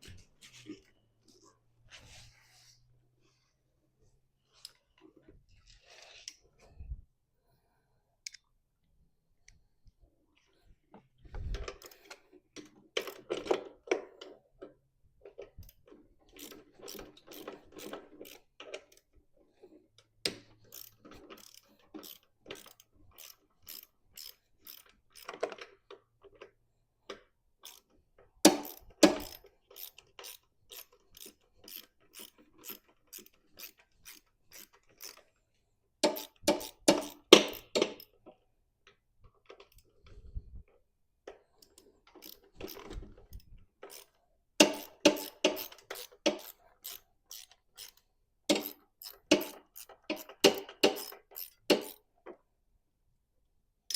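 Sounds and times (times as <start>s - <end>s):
ratchet wrench clicking: 16.4s - 19.0s, 20.7s - 25.4s, 27.6s - 27.8s, 28.5s - 35.2s, 36.0s - 38.1s, 41.6s - 42.9s, 43.9s - 52.0s.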